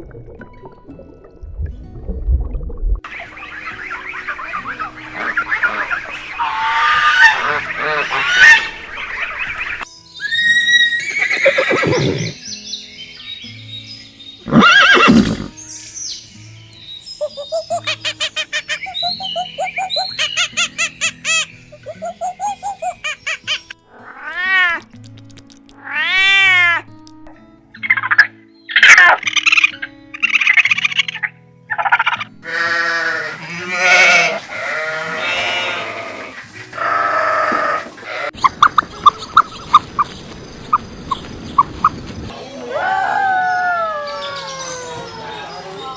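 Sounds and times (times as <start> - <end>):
faint background music: 0.0 - 40.1
bird calling: 3.1 - 12.4, 17.2 - 23.8, 32.5 - 42.0
farm animal bleating: 3.3 - 9.6, 32.4 - 38.4.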